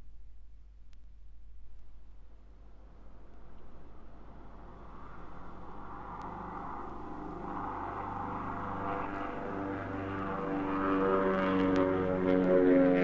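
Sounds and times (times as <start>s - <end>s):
vinyl record clicks: 0.8s - 2.0s
propeller aircraft engine drone: 2.0s - 13.0s.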